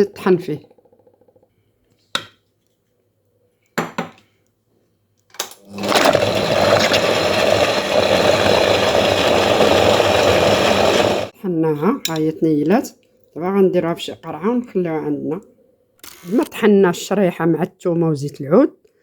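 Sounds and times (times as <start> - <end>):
electric blender grinding: 5.6 - 11.3.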